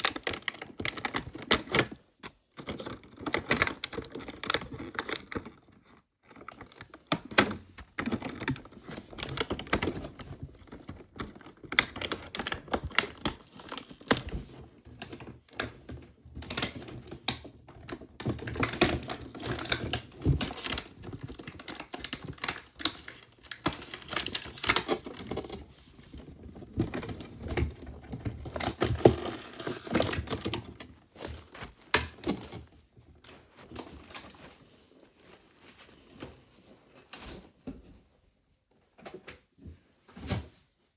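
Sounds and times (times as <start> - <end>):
plastic clicks and crinkling: 0.0 - 37.8.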